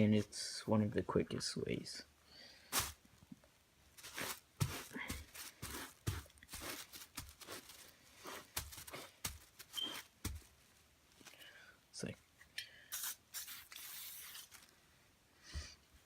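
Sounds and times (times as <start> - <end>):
towel rubbing rubber tire: 4.0 - 10.4.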